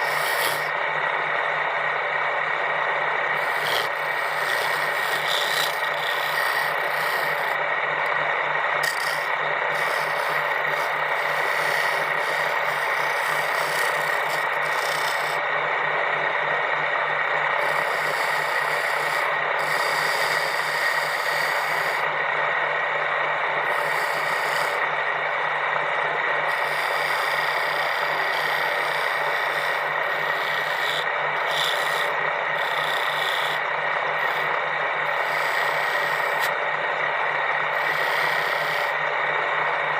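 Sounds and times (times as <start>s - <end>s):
wood being sanded: 0.0s - 0.8s, 3.4s - 7.6s, 8.8s - 15.4s, 17.6s - 22.1s, 23.6s - 24.9s, 26.4s - 36.6s, 37.7s - 39.0s.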